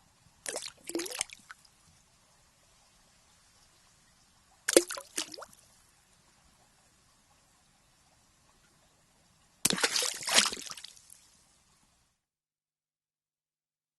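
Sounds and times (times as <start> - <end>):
water splashing and gurgling: 0.4 - 1.6, 4.7 - 5.6, 9.6 - 11.1.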